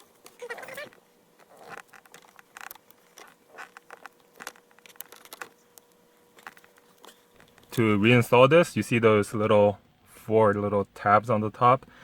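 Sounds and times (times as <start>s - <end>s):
plastic trim clicks and rustles: 1.4s - 7.8s.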